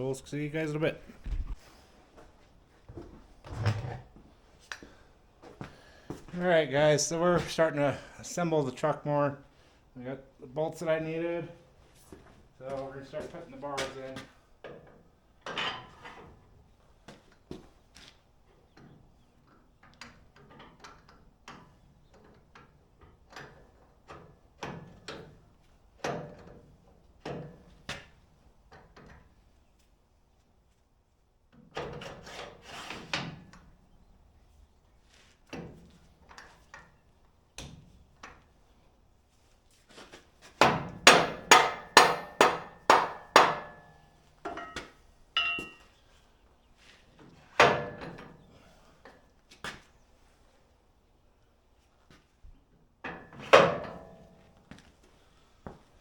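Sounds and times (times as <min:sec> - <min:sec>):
hammer striking metal: 0:40.6 - 0:44.0, 0:45.4 - 0:45.9
metal clanks: 0:41.0 - 0:45.9
metallic ring: 0:45.4 - 0:45.9.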